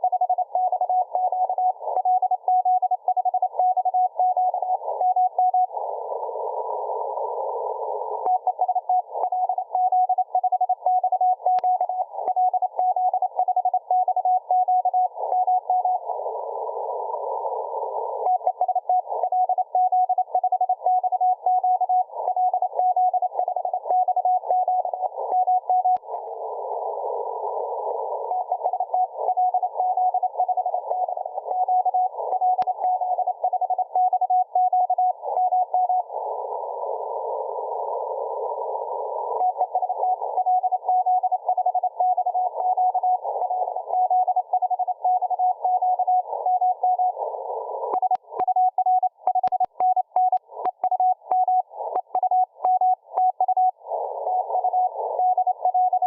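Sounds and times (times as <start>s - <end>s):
morse code beeps: 47.9s - 53.8s.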